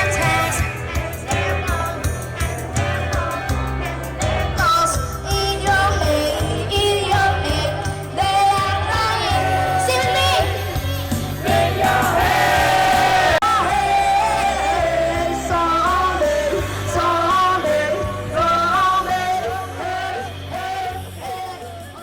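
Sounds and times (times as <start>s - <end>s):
backing track with bass and beat: 0.0s - 22.0s
woman singing: 4.2s - 10.8s, 13.4s - 20.2s.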